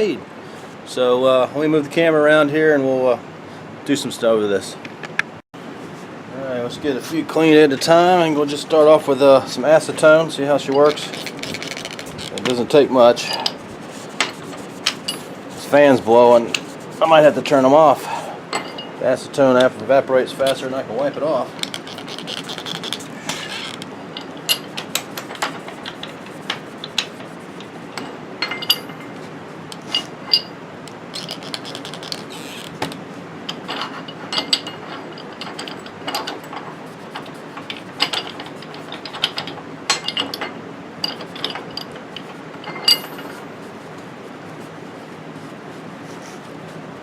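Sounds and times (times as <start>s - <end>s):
ceiling fans whirring: 0.0s - 47.0s
metal parts clinking: 10.0s - 17.6s, 18.5s - 19.0s, 20.4s - 29.2s, 29.8s - 32.6s, 33.5s - 43.4s.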